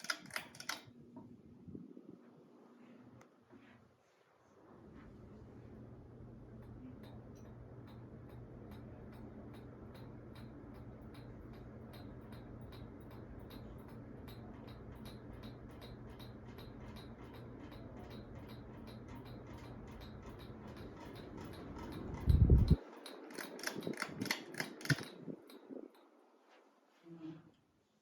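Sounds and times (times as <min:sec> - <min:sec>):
ceiling fan humming: 0:00.0 - 0:28.0
light even ticking: 0:06.5 - 0:26.1
louder clicks: 0:23.3 - 0:25.2.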